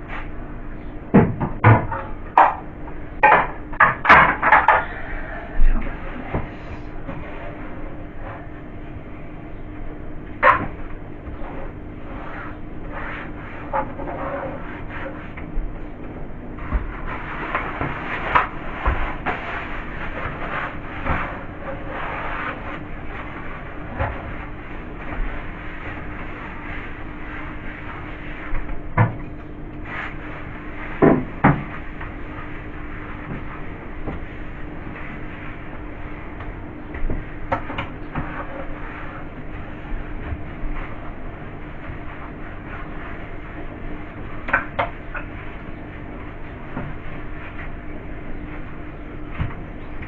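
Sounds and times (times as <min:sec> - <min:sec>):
dull knocks against fridge: 0:01.1 - 0:02.6
cloth scrubbing inside fridge: 0:01.7 - 0:50.0.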